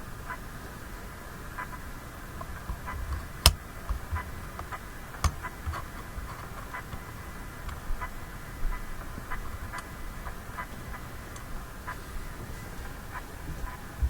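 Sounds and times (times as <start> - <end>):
radio static crackles and pops: 0.0 - 14.0.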